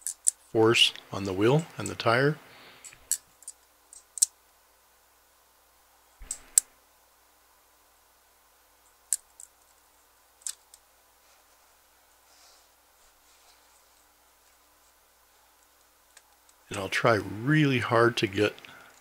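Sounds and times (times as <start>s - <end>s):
small mechanical clicks: 2.8s - 4.4s.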